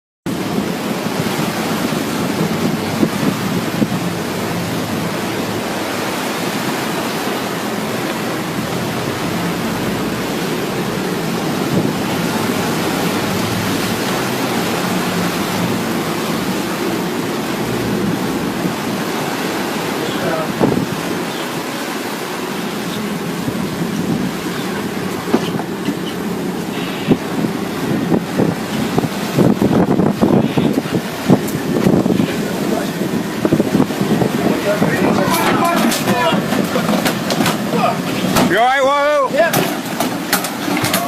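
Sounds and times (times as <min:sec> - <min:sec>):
wind and sea water rushing: 0:00.2 - 0:41.0
wind buffeting microphone: 0:00.3 - 0:38.9.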